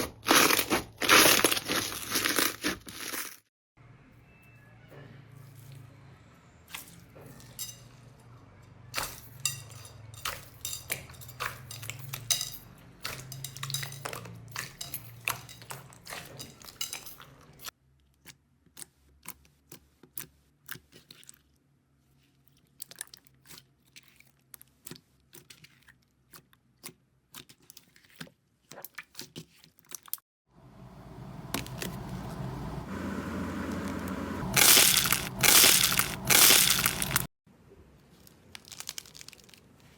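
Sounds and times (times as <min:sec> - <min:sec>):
low hum: 0:30.6 - 0:37.3.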